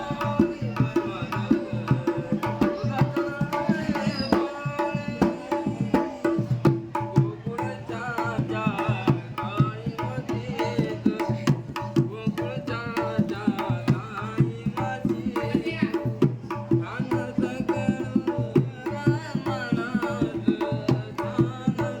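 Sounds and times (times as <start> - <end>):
hand drum rhythm: 0.0 - 22.0
man singing: 0.0 - 22.0.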